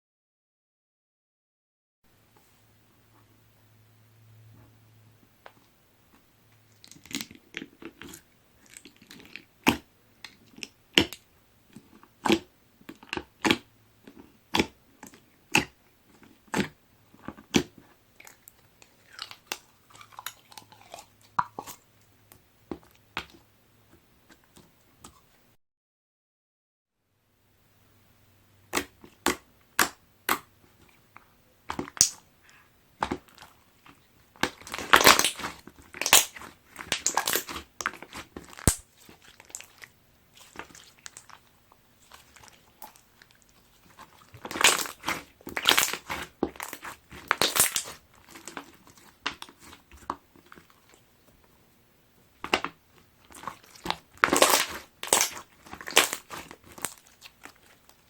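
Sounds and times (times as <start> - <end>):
slime with beads crackling and popping: 31.7 - 51.0, 52.4 - 58.0.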